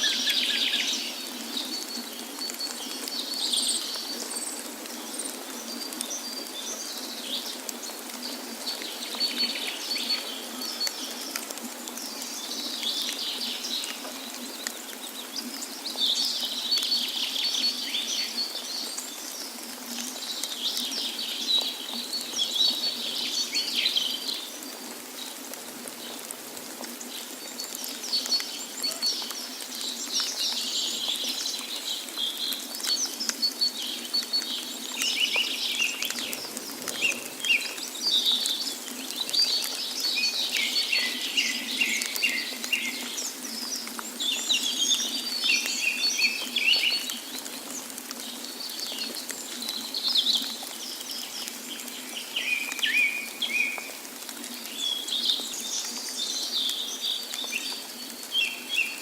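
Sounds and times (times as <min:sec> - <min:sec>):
songbirds chirping and trilling: 0:27.1 - 0:54.0.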